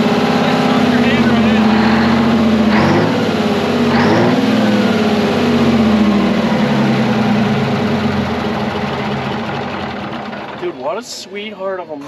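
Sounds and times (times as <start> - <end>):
diesel generator running: 0.0 - 11.8.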